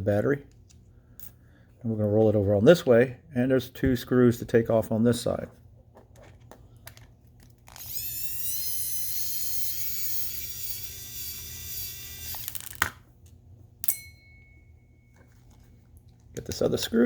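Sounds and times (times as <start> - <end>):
electric screwdriver whining: 7.7 - 13.0.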